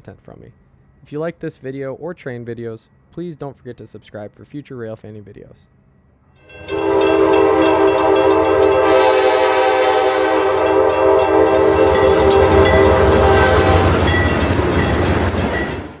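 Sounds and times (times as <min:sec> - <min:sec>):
locomotive air horn chord: 0:06.4 - 0:14.5
train rumbling by: 0:06.4 - 0:16.0.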